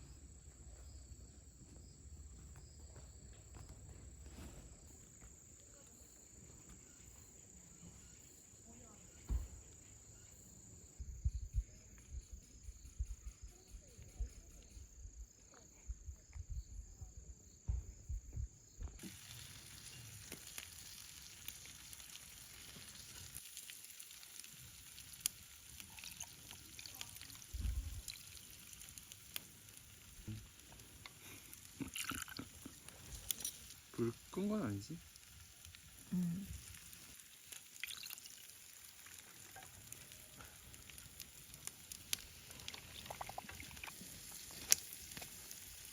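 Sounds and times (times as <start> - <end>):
campfire crackling and popping: 18.9 - 45.9.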